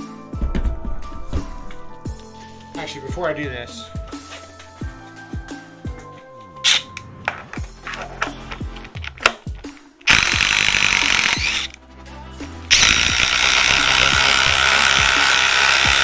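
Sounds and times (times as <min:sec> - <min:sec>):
cordless impact driver running: 0:10.1 - 0:11.8, 0:12.7 - 0:16.0.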